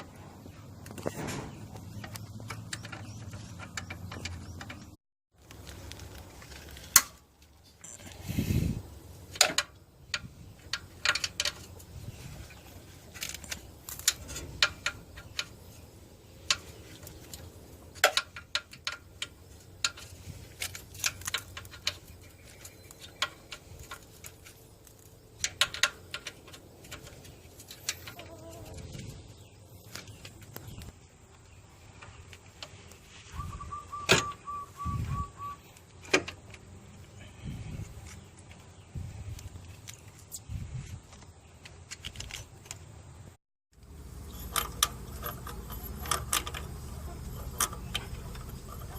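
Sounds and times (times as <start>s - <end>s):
metallic clicks and clinks: 43.8s - 48.9s.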